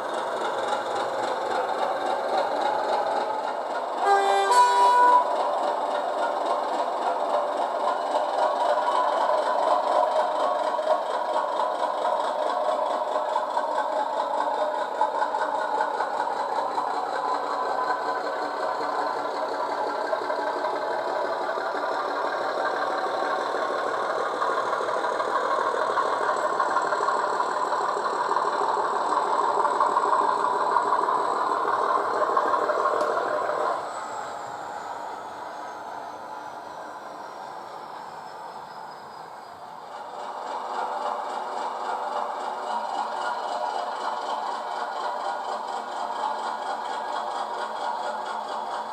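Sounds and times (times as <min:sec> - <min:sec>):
diesel engine through small speaker: 0:00.0 - 0:05.5, 0:12.8 - 0:38.2.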